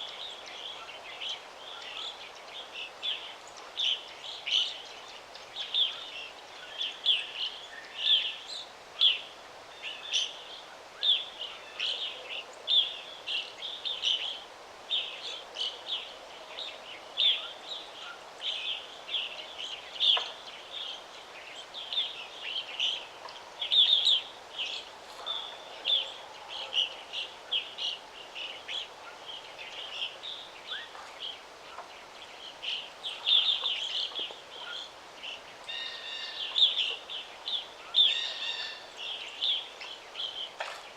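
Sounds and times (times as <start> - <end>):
birds chirping: 0.0 - 40.9
faint background hiss: 0.0 - 40.9.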